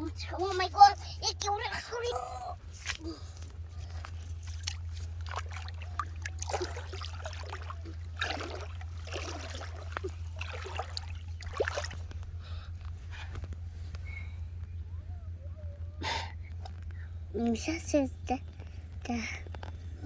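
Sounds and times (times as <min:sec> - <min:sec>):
steady low hum: 0:00.0 - 0:20.0
river water splashing: 0:02.6 - 0:12.8.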